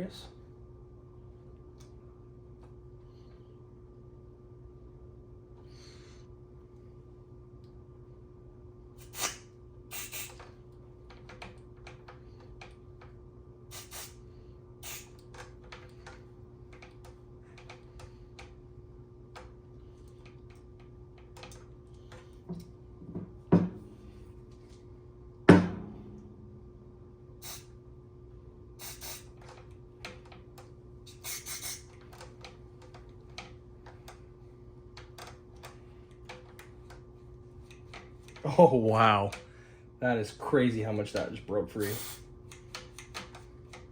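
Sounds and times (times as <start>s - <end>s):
low hum: 18.6s - 31.1s
aerosol spray hisses: 31.2s - 31.8s.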